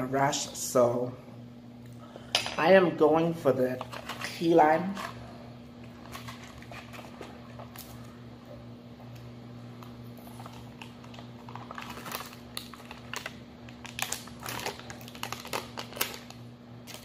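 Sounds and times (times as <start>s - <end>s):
faint steady hum: 0.0s - 17.0s
plastic cup crinkling and clicking: 9.1s - 17.0s.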